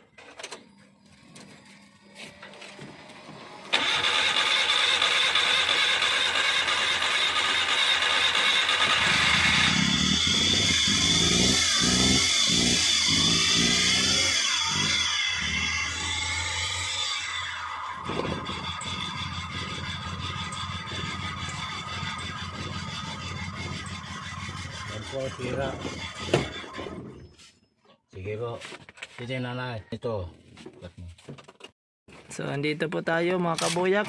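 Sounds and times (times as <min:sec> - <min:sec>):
starter motor cranking: 0:03.6 - 0:27.1
engine firing raggedly: 0:03.7 - 0:27.0.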